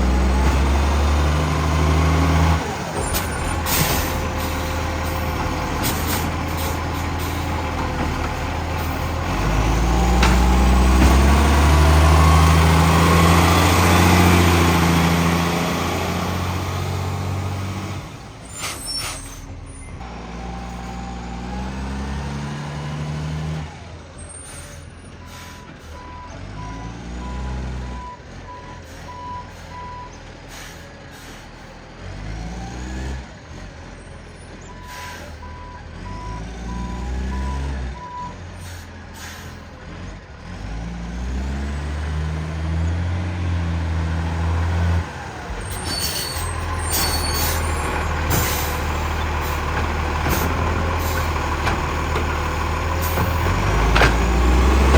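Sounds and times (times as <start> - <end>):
garbage truck engine revving: 0.0 - 54.9
reversing beeps: 25.3 - 30.2, 34.7 - 38.4.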